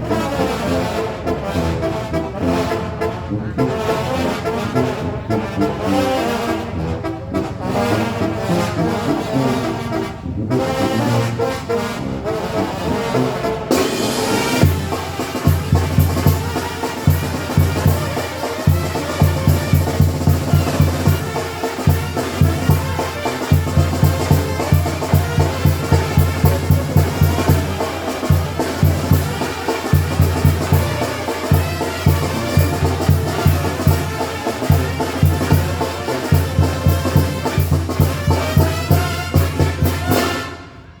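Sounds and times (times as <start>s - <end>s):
brass band playing lively tune: 0.0s - 41.0s
bass drum beat: 14.6s - 40.2s.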